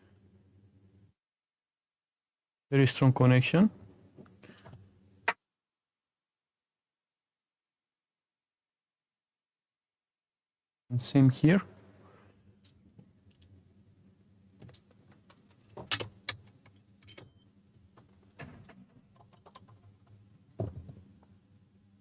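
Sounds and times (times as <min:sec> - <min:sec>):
faint electrical hum: 0:10.9 - 0:22.0.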